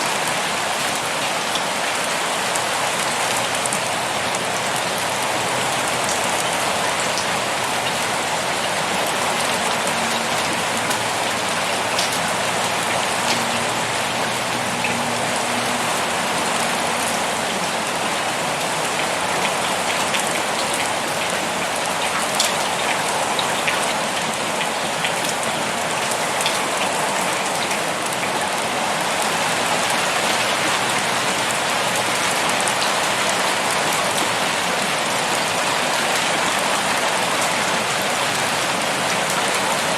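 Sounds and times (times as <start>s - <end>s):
steady rain falling: 0.0s - 39.9s
raindrops ticking: 2.5s - 39.9s.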